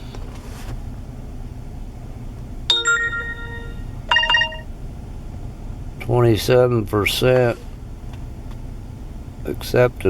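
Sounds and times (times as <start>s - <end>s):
notification chime: 2.7s - 4.6s.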